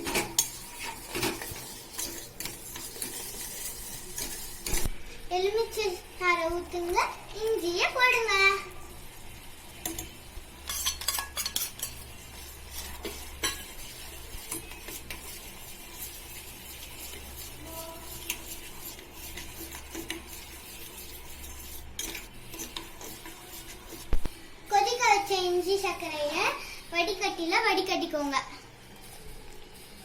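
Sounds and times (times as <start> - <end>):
spoon clinking against pan: 10.7 - 12.1.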